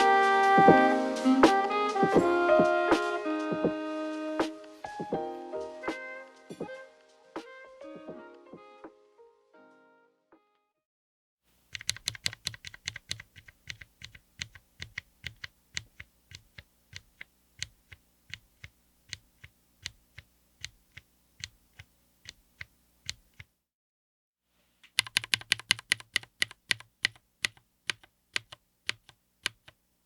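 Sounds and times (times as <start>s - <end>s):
mechanical keyboard keystrokes: 11.7s - 23.5s, 24.9s - 29.8s.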